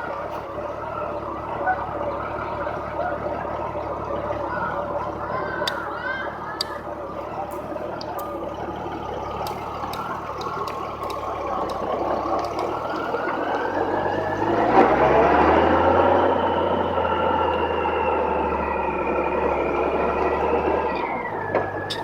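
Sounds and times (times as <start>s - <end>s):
motorcycle engine running: 0.0s - 22.0s
sharp ticks: 5.6s - 5.9s, 6.6s - 6.8s, 9.4s - 13.3s.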